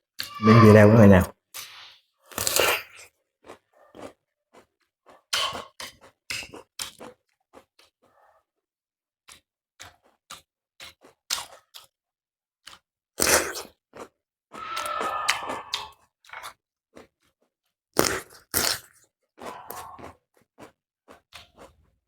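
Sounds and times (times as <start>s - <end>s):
cucumber crunching while chewed: 2.3s - 8.2s, 9.3s - 12.0s, 12.6s - 17.4s, 18.0s - 22.0s.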